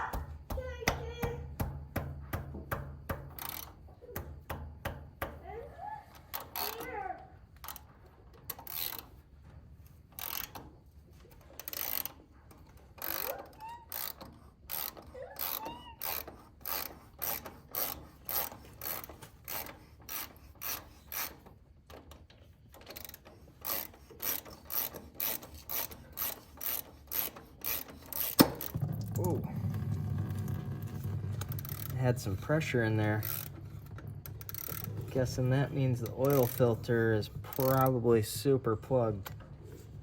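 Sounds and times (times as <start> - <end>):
socket ratchet clicking: 3.0 - 4.7, 8.5 - 9.1, 10.1 - 10.7, 11.6 - 28.8, 33.1 - 35.1, 36.0 - 36.8.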